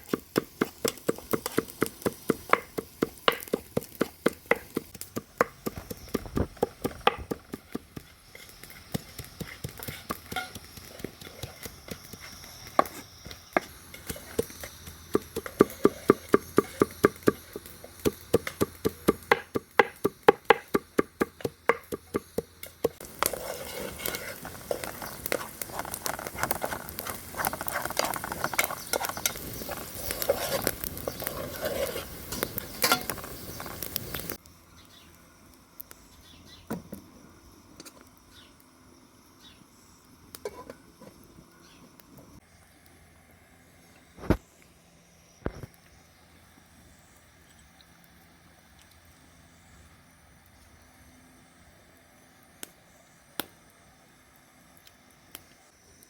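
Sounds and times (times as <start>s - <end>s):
scraping and rustling: 23.0s - 34.3s.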